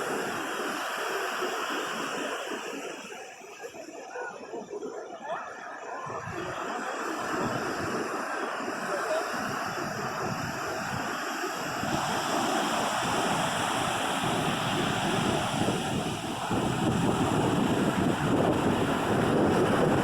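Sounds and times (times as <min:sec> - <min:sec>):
ocean surf breaking: 0:05.5 - 0:20.0.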